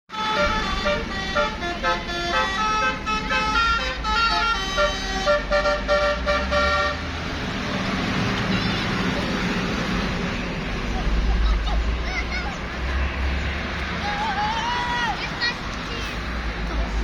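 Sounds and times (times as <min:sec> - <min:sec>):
bus horn playing a tune: 0:00.1 - 0:07.2
low engine rumble: 0:00.1 - 0:17.0.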